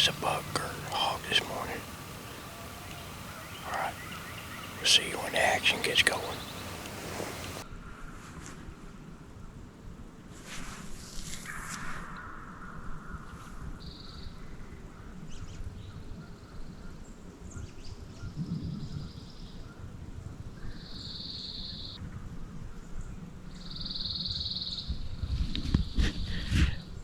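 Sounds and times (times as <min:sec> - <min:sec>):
bird trilling: 0:00.0 - 0:07.6
distant turkey gobbling: 0:00.0 - 0:07.6.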